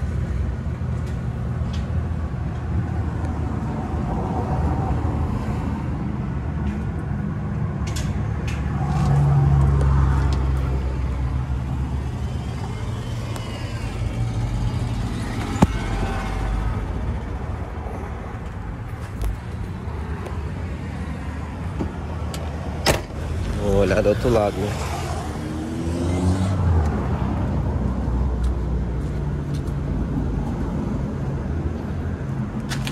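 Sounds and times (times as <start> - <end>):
truck engine humming: 9.1 - 24.5.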